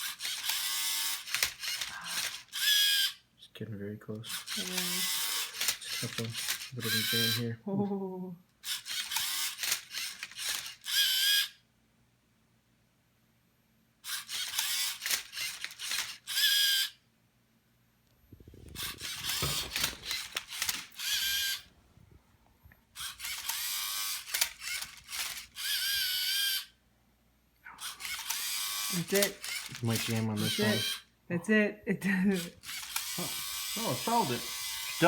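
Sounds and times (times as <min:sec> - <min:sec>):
small electric motors whirring: 0:00.0 - 0:03.2, 0:04.2 - 0:07.5, 0:08.6 - 0:11.6, 0:14.0 - 0:17.0, 0:18.3 - 0:21.7, 0:22.9 - 0:26.8, 0:27.8 - 0:31.1, 0:32.4 - 0:35.0.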